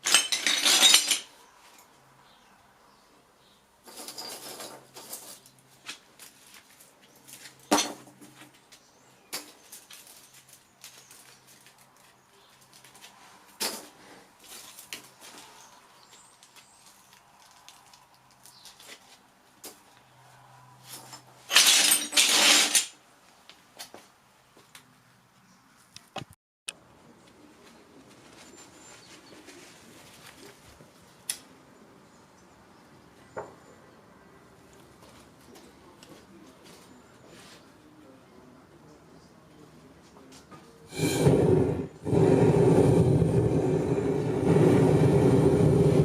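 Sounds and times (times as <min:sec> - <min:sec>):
loud rattling and scraping: 0:00.0 - 0:01.3, 0:21.5 - 0:22.9
metal pieces clinking and knocking: 0:00.0 - 0:01.3, 0:21.5 - 0:22.9.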